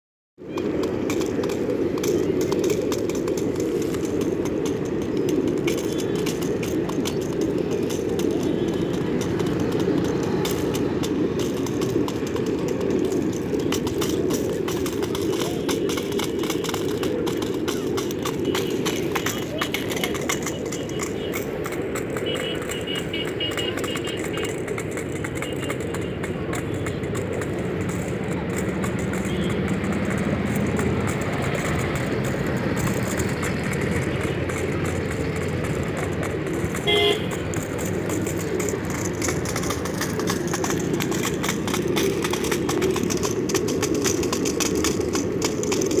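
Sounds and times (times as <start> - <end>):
traffic rumble and hiss: 0.4 - 46.0
vehicle horn toot: 22.2 - 24.4, 36.8 - 37.4.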